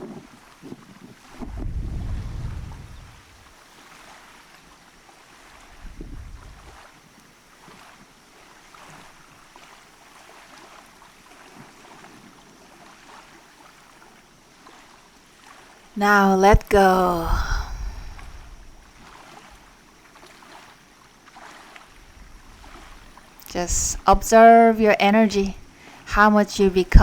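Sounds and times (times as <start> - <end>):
wind buffeting microphone: 0.0 - 3.6, 5.5 - 6.9, 16.4 - 19.8, 22.0 - 27.0
small waves lapping: 0.0 - 27.0.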